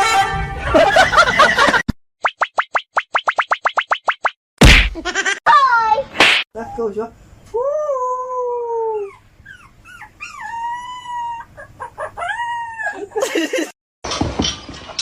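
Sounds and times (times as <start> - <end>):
dog yipping: 9.0 - 13.1.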